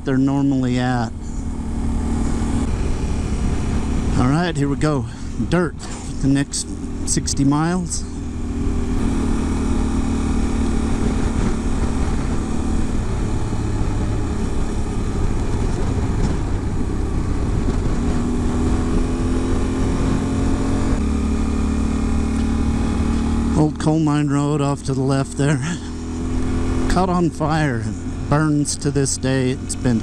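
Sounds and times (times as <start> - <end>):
motorcycle engine running: 0.0 - 30.0
wind noise on microphone: 10.5 - 21.0.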